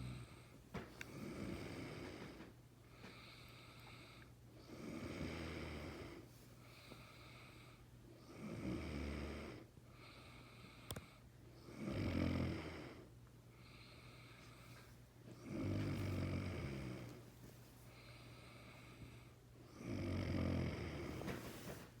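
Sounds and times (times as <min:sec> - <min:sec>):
man snoring: 0:00.0 - 0:00.4, 0:01.1 - 0:02.4, 0:04.1 - 0:06.2, 0:08.3 - 0:10.7, 0:11.7 - 0:13.1, 0:15.4 - 0:17.2, 0:19.7 - 0:21.2
quiet breaths: 0:00.0 - 0:22.0.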